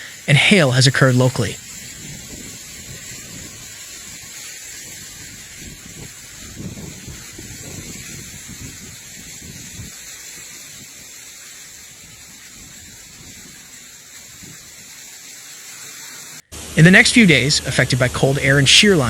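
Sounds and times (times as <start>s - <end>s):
wind buffeting microphone: 0.0s - 15.0s
heavy rain hissing: 0.0s - 19.0s.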